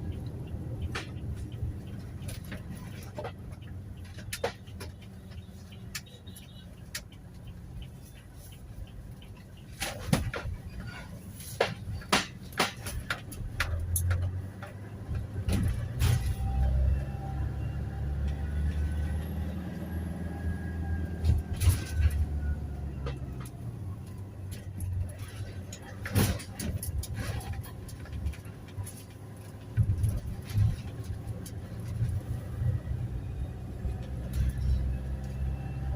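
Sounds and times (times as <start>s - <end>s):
van engine and road drone: 0.0s - 35.9s
sharp knocks and rattles: 9.7s - 16.1s.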